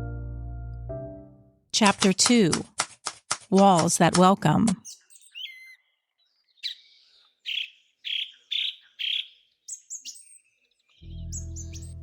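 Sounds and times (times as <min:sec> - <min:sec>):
bird chirping: 0:04.8 - 0:12.0.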